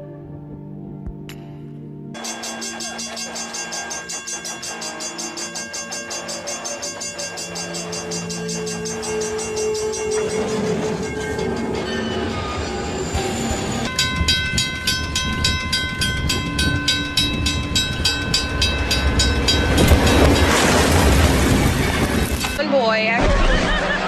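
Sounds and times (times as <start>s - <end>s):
horn-like tones: 2.2s - 14.0s
train horn: 2.2s - 14.0s
fast regular ringing: 2.2s - 22.6s
train rumbling: 2.2s - 24.0s.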